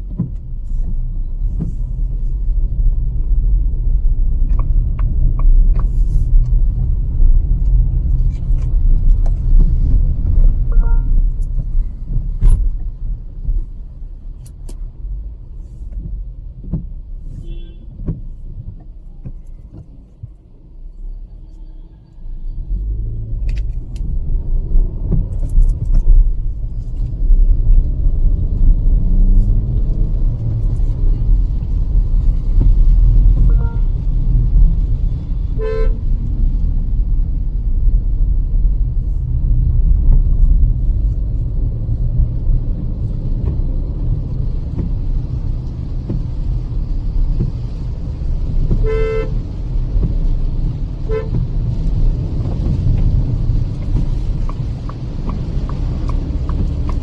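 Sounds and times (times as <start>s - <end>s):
car road and engine rumble: 0.0s - 57.0s
car horn toot: 17.4s - 17.9s, 33.5s - 33.9s, 35.6s - 36.0s, 48.8s - 49.4s, 51.0s - 51.4s.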